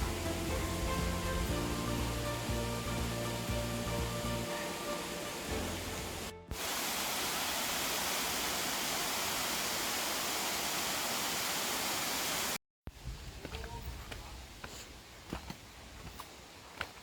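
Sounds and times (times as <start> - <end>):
background music: 0.0 - 6.6
water rushing: 0.0 - 12.6.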